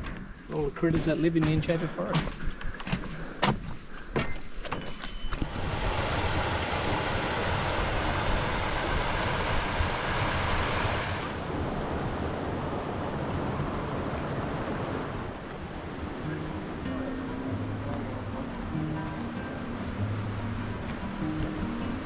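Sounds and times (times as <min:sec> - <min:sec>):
creek water rushing: 0:05.5 - 0:22.0.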